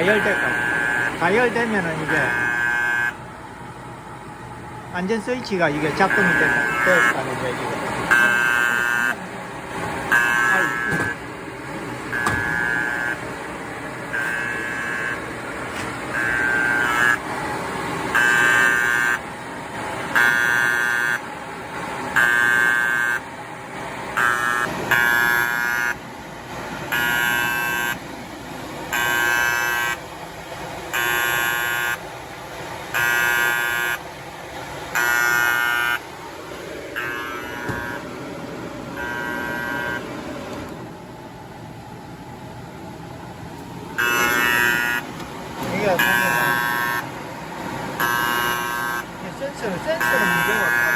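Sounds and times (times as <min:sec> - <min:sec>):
warning buzzer beeping: 0:00.0 - 0:03.2, 0:05.0 - 0:09.3, 0:10.0 - 0:11.3, 0:12.0 - 0:13.3, 0:14.0 - 0:15.4, 0:16.0 - 0:17.4, 0:18.0 - 0:19.3, 0:20.1 - 0:21.3, 0:22.1 - 0:23.3, 0:24.1 - 0:26.0, 0:26.8 - 0:28.1, 0:28.9 - 0:30.1, 0:30.9 - 0:32.1, 0:32.9 - 0:34.0, 0:34.9 - 0:36.2, 0:36.9 - 0:38.2, 0:38.8 - 0:40.2, 0:43.9 - 0:50.9.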